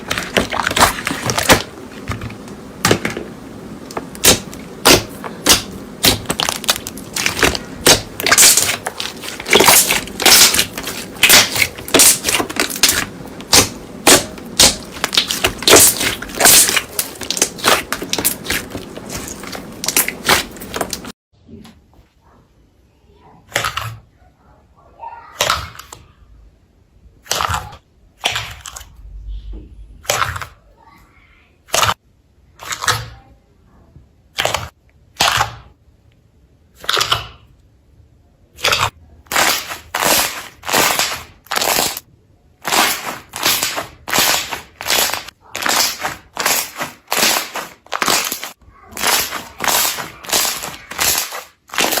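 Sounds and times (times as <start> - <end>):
slime squished with crackling pops: 3.9 - 21.1, 38.6 - 42.0, 42.6 - 52.0.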